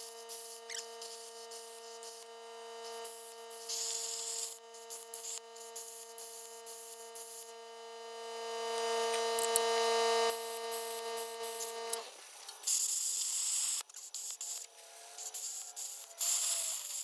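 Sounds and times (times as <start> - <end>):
plasma cutter whine: 0.0 - 2.2, 2.8 - 7.5, 10.3 - 17.0.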